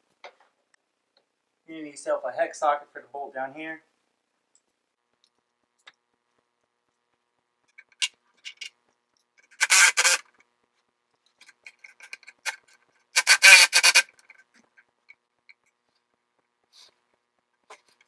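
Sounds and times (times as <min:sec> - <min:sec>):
socket ratchet clicking: 0:08.0 - 0:08.7, 0:09.6 - 0:10.2, 0:13.2 - 0:14.1.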